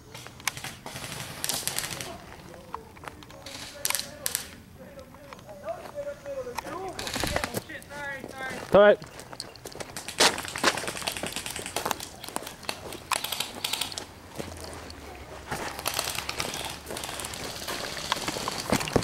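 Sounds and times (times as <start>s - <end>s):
sharp clicks and crunches: 0.0s - 5.5s, 6.5s - 19.0s.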